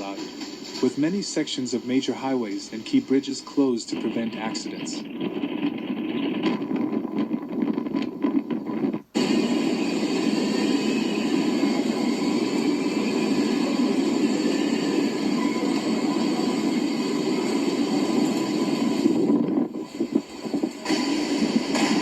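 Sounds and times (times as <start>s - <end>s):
wind and rain rushing: 0.0s - 22.0s.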